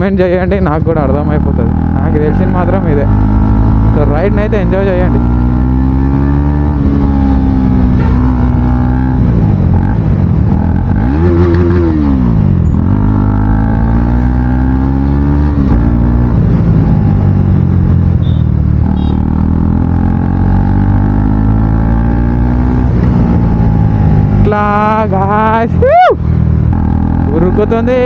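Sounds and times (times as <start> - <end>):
loud motorcycle engine revving: 0.0 - 25.6, 26.4 - 28.0.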